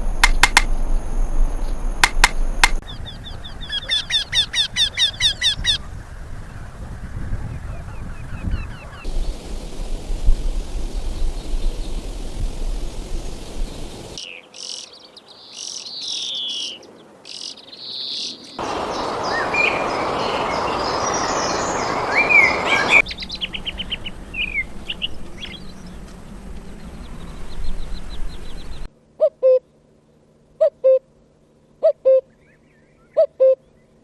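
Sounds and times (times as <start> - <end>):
songbirds chirping: 1.0 - 28.9, 31.2 - 34.0
steady hiss: 9.0 - 16.2, 18.6 - 28.9.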